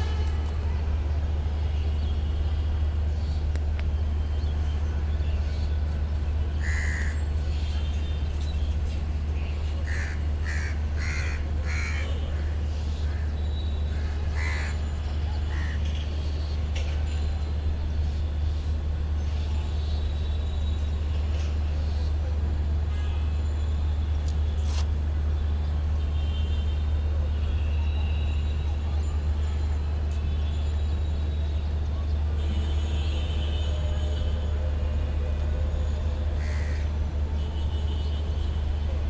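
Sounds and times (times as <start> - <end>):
low rumble of city traffic: 0.0 - 39.0
crows cawing: 6.6 - 7.2, 9.8 - 13.3, 13.9 - 14.9, 15.5 - 15.9, 36.4 - 36.8.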